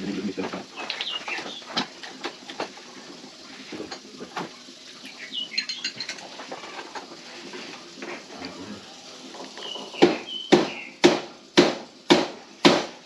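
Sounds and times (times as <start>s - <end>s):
metal tools clinking: 5.5s - 6.8s.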